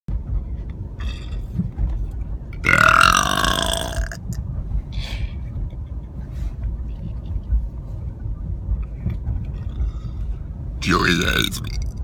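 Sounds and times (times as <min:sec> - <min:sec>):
person burping: 0:02.6 - 0:04.2.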